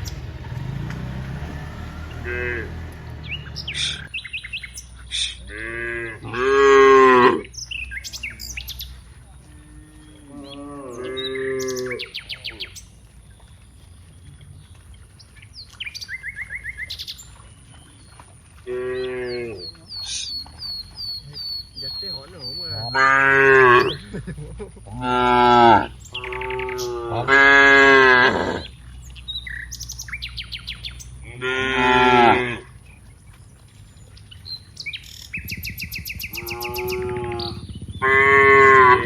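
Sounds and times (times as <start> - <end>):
cows mooing: 0.0 - 4.1, 5.2 - 7.5, 9.4 - 12.6, 18.6 - 19.8, 21.8 - 24.1, 24.8 - 28.8, 31.2 - 32.8, 36.2 - 39.0
birds chirping: 0.0 - 39.0.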